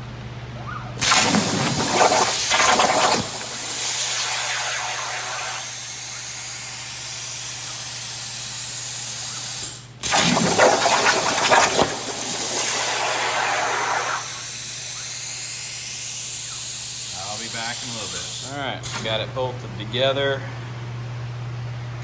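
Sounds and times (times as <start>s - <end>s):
low steady hum: 0.0s - 7.0s, 17.9s - 22.0s
plasma torch hissing: 1.0s - 19.2s.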